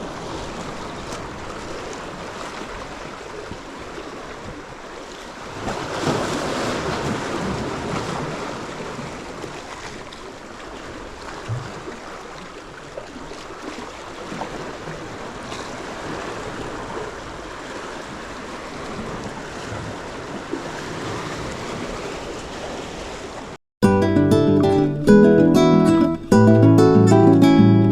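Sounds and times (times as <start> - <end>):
sea waves washing onto shore: 0.0 - 23.6
acoustic guitar music: 23.8 - 27.9.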